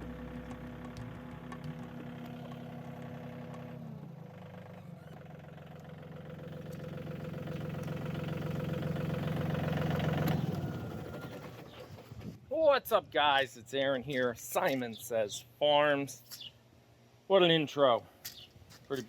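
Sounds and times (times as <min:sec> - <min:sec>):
riding lawn mower engine running: 0:00.0 - 0:12.6.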